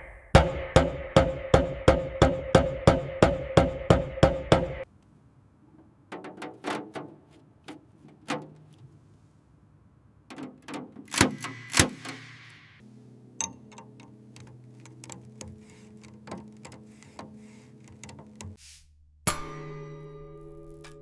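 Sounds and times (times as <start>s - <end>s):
light knocks and clicks: 13.4s - 18.6s.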